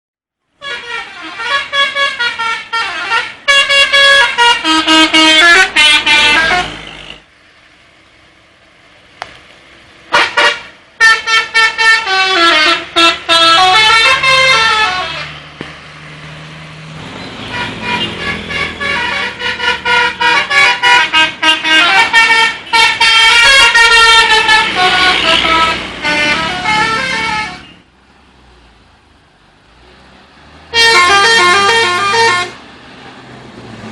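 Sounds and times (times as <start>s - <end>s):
multi-tone musical bus horns: 0.5s - 7.3s, 10.1s - 15.5s, 17.0s - 27.9s, 30.6s - 32.7s.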